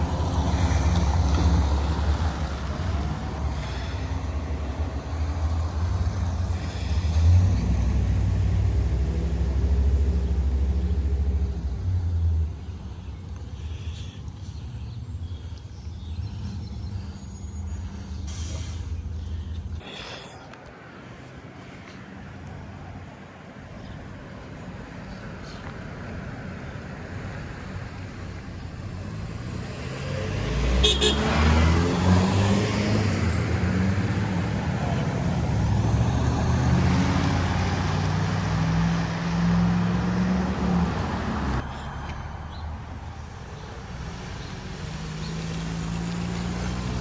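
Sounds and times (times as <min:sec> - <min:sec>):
fire truck diesel engine rumbling: 0:16.2 - 0:19.8, 0:33.0 - 0:47.0.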